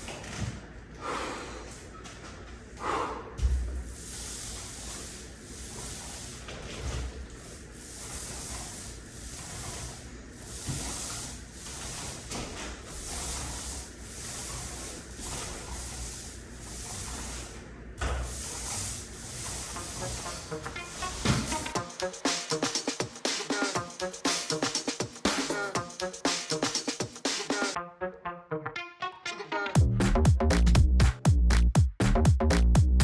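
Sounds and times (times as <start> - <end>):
hand sanding a wall: 3.6 - 27.7.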